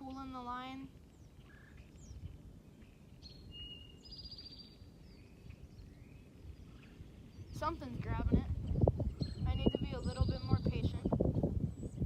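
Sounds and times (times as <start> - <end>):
bird whistles and chirps: 2.9 - 7.6, 8.7 - 10.9.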